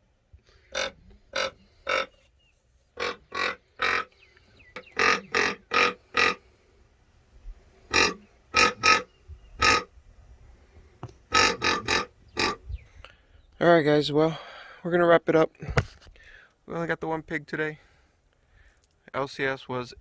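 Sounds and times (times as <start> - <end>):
animal giving harsh calls: 0.6 - 2.3, 3.0 - 4.2, 4.8 - 6.5, 7.9 - 9.9, 11.3 - 12.7.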